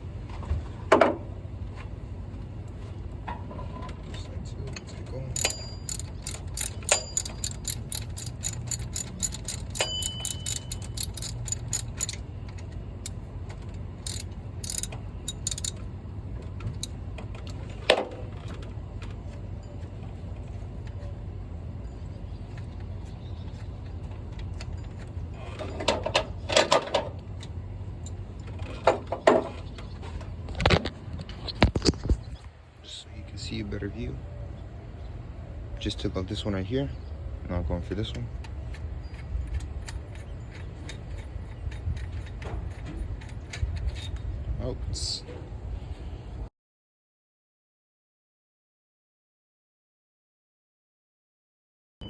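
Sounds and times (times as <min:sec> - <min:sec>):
ratchet wrench clicking: 0:05.4 - 0:12.2, 0:14.0 - 0:15.8
tools knocking on metal: 0:05.4 - 0:12.2, 0:14.1 - 0:15.8.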